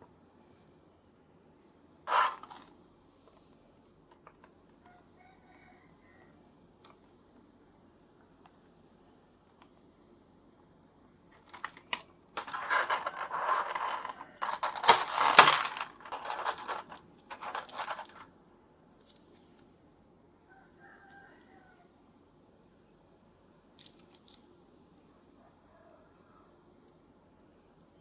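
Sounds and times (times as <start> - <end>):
packaging rustling and crackling: 11.4 - 18.3.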